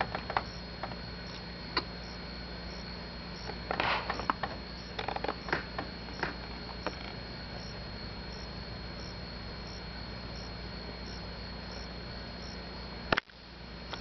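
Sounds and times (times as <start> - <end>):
faint high-pitched whine: 0.0 - 14.0
low hum: 0.0 - 14.0.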